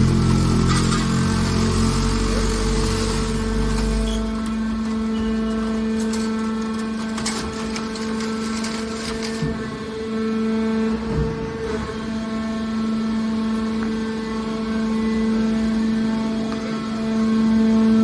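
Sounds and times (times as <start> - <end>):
hydraulic pump humming: 0.0 - 18.0.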